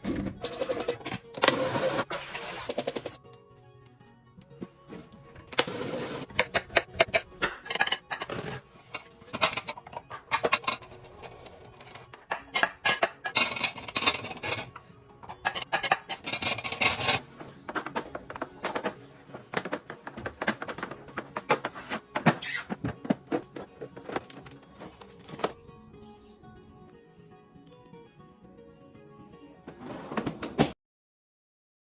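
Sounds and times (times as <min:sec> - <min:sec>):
dishes and containers clattering: 0:00.0 - 0:03.2, 0:04.9 - 0:25.6
background music: 0:00.0 - 0:30.8.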